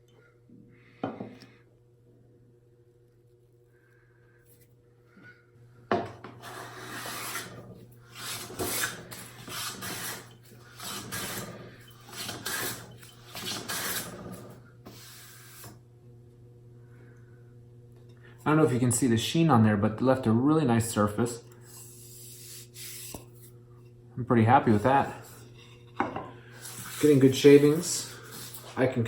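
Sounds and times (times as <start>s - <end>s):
hand plane cutting strokes on wood: 6.4s - 14.4s.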